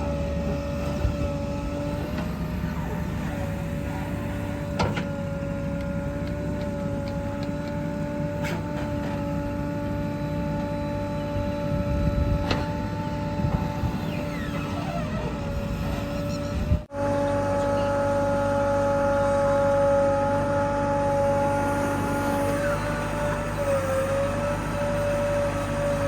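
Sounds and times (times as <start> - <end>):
backhoe loader engine running: 0.0 - 26.0.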